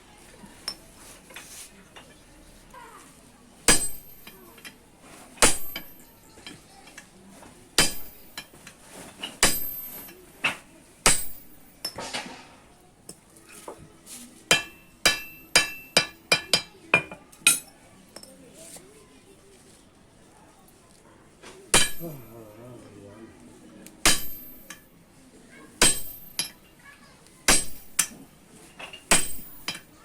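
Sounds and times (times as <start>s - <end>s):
hammer striking iron: 3.7s - 4.4s, 5.4s - 6.1s, 7.8s - 8.5s, 9.4s - 10.1s, 11.0s - 12.4s, 14.5s - 17.7s, 21.7s - 22.3s, 24.0s - 24.8s, 25.8s - 26.7s, 27.5s - 28.3s, 28.9s - 29.9s.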